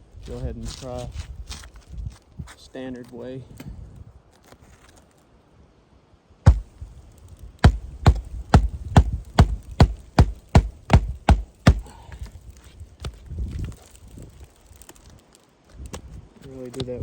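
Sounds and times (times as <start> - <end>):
hammer driving nail through shingle: 6.5 - 6.8, 7.6 - 12.3.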